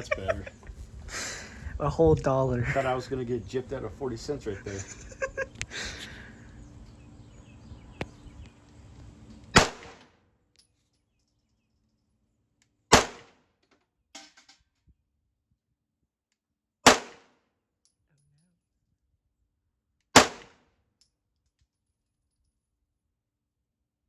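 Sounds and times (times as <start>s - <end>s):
gunshots: 9.6s - 10.0s, 12.9s - 13.4s, 16.9s - 17.3s, 20.2s - 20.6s.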